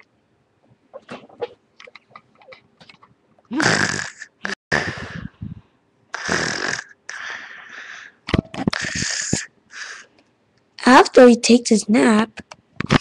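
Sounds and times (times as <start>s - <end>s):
person snoring loudly: 3.6s - 5.3s, 6.2s - 7.0s, 8.8s - 10.0s.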